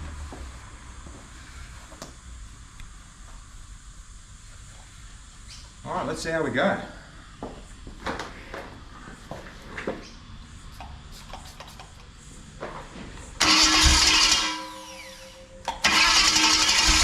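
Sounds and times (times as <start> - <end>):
falling whine: 12.3 - 17.0
engine cranking and bursting: 13.4 - 17.0.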